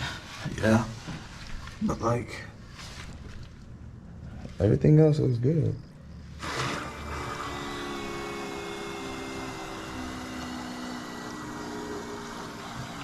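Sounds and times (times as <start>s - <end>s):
electric water pump whirring: 6.2s - 13.0s.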